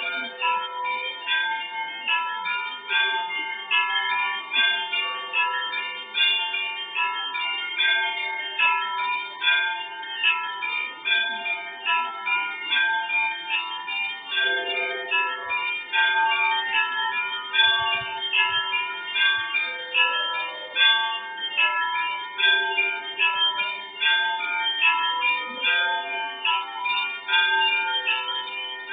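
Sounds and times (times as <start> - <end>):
church bells ringing: 0.0 - 28.9.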